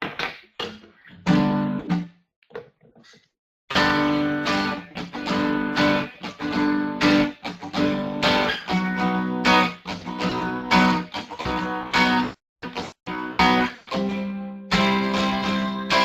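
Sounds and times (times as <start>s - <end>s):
acoustic guitar strumming chords: 3.7s - 16.0s.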